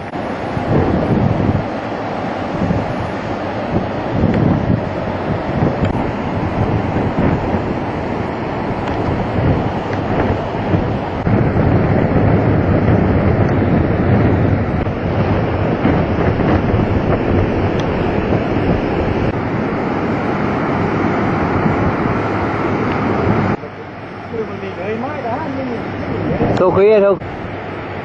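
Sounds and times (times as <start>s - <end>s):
strong wind on microphone: 0.0s - 28.0s.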